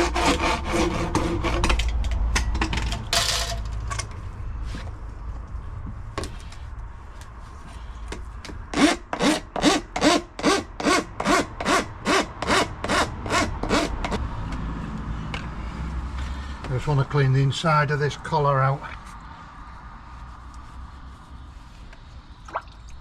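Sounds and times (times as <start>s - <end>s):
hand saw cutting: 0.0s - 1.9s, 8.7s - 14.2s.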